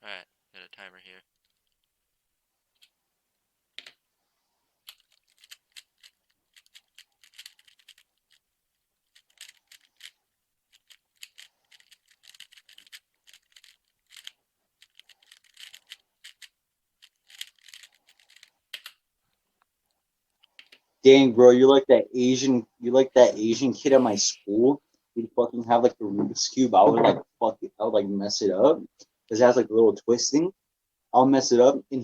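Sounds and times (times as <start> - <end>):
plastic puzzle cube clicking: 4.9 - 8.4, 9.1 - 10.1, 10.7 - 19.0.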